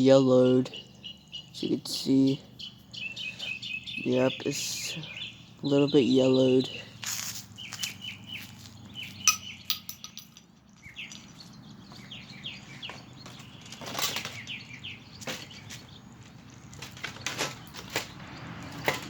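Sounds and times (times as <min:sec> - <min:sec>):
songbirds chirping: 0:00.0 - 0:19.0.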